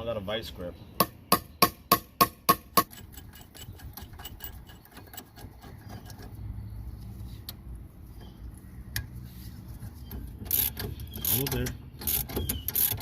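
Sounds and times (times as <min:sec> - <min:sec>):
rapid metallic ticking of tools: 0:01.0 - 0:06.3, 0:10.4 - 0:13.0.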